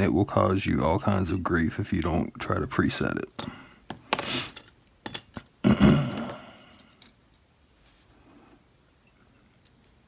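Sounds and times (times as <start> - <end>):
metal lock parts clinking: 4.5 - 5.5
metal parts jangling: 4.5 - 5.5.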